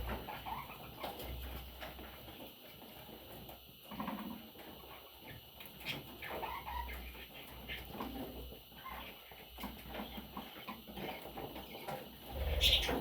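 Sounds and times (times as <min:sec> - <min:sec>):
bird chicks calling: 0:08.8 - 0:13.0.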